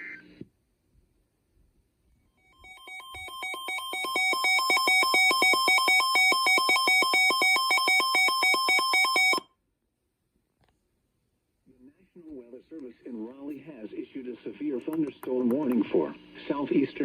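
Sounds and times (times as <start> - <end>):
two-pitch electronic alarm tone: 2.4 - 9.5.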